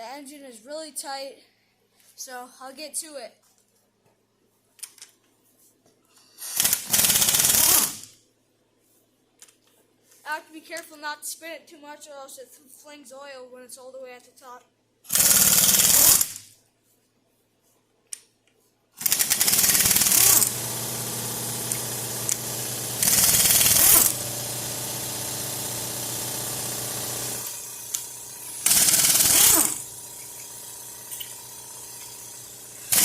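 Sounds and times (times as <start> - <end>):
impact wrench hammering: 19.0 - 33.0.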